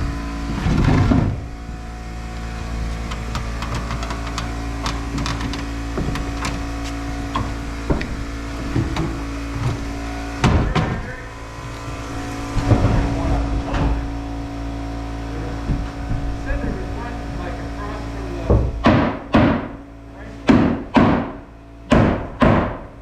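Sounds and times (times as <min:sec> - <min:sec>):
engine running: 0:00.0 - 0:21.9
knocks and clatter: 0:00.5 - 0:01.5, 0:02.9 - 0:14.1, 0:15.6 - 0:16.9.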